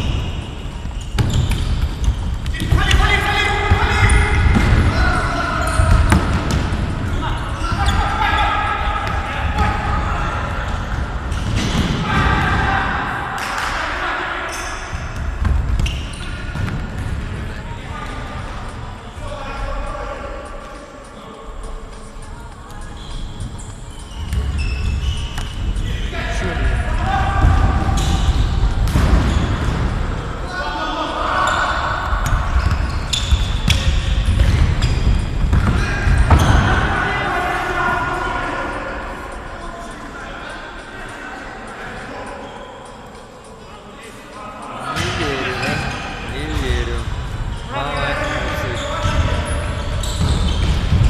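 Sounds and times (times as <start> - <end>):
players shouting: 2.6 - 14.6, 26.0 - 28.5, 44.8 - 50.0.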